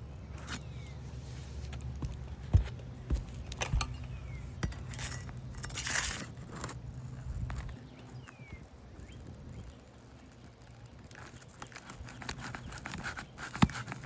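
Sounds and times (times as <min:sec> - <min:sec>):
shingles scraping and crackling: 0:00.0 - 0:08.6, 0:10.2 - 0:14.0
shingles knocking and clicking: 0:01.7 - 0:06.8.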